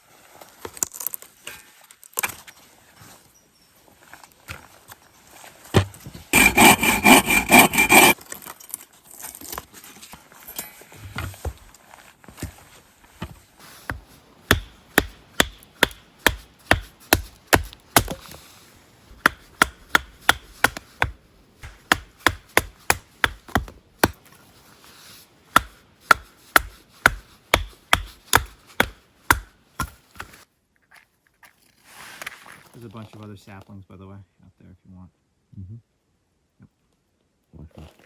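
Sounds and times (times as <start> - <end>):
blade chopping wood: 6.4 - 8.2, 14.5 - 18.2, 19.1 - 24.2, 25.6 - 30.4.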